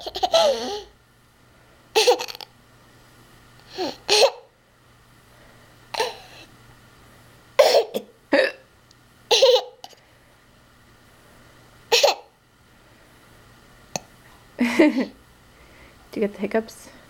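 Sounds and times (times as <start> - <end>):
person hiccuping: 7.6 - 8.7
person laughing: 14.6 - 15.2.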